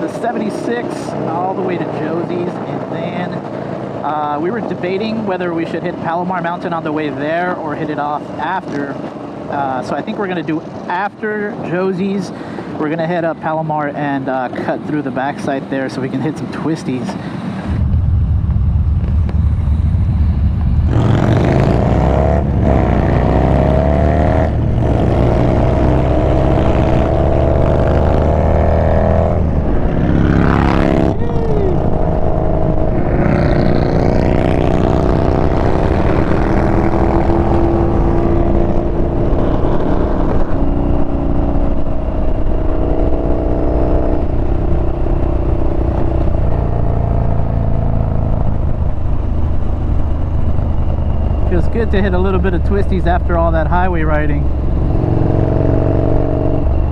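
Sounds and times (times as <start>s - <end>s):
motorcycle engine accelerating: 17.5s - 56.9s.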